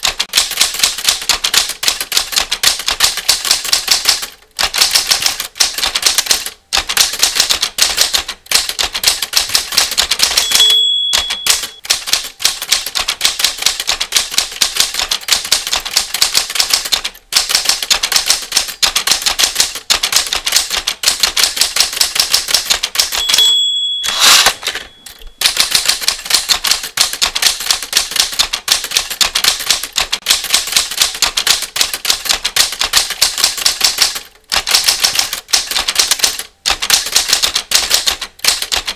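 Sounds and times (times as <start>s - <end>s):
typewriter carriage return: 0.0s - 38.9s
typewriter keys typing: 0.0s - 38.9s
typewriter bell ding: 10.1s - 12.7s, 23.0s - 26.2s.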